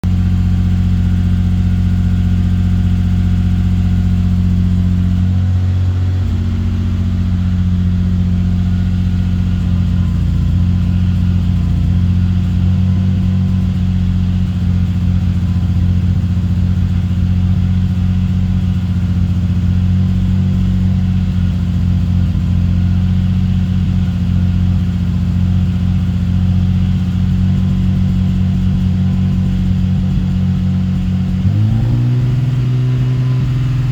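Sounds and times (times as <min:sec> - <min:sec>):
car engine running: 0:00.0 - 0:33.9.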